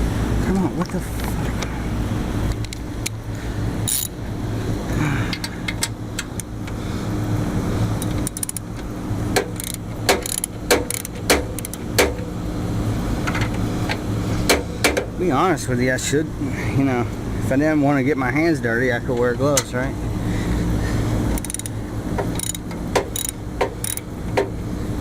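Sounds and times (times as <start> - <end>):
low machinery hum: 0.0 - 25.0
sharp metallic clicks: 8.0 - 12.3, 21.3 - 24.5.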